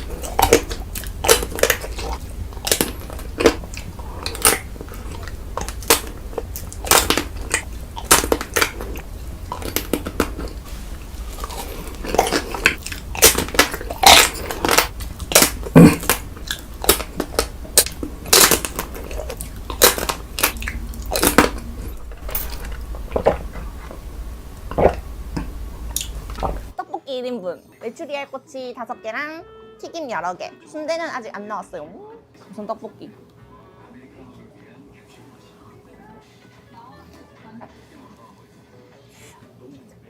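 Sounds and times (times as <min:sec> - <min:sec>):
person chewing crunchy food: 0:00.0 - 0:26.8
steady low hum: 0:00.0 - 0:26.8.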